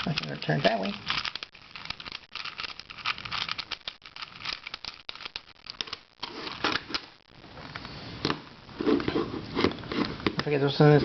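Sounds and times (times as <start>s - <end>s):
plastic crinkling and rustling: 0.0s - 7.0s.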